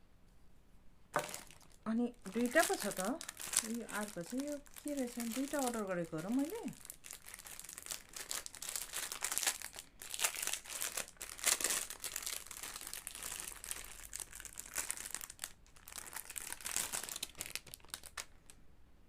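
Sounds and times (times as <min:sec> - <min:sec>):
packaging crinkling: 0:01.2 - 0:18.6.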